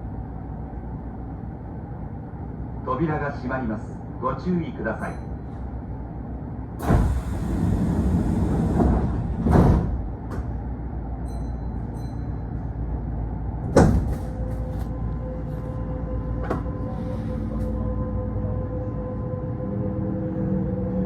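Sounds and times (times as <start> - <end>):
train carriage hum: 0.0 - 21.0
train doors closing thump: 6.8 - 10.6, 13.6 - 14.9, 16.4 - 16.8.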